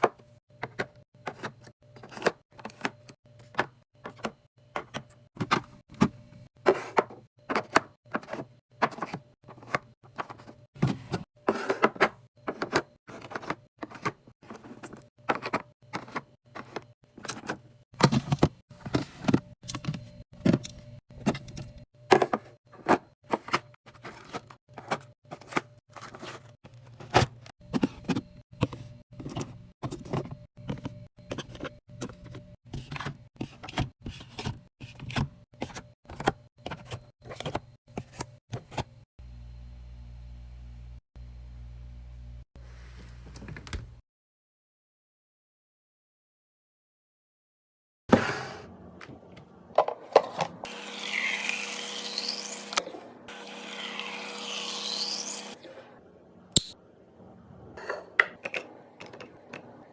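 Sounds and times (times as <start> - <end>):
items clacking and knocking: 0.0 - 38.9
fridge hum: 0.0 - 44.0.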